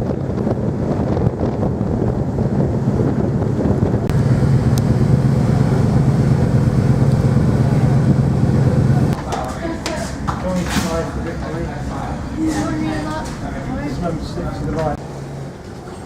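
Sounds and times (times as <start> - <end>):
wind noise on microphone: 0.0 - 11.2
engine humming: 0.0 - 16.0.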